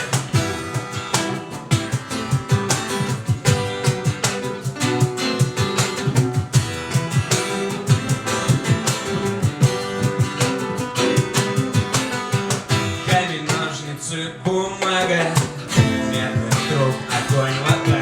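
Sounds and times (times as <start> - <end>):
acoustic guitar strumming: 0.0 - 18.0.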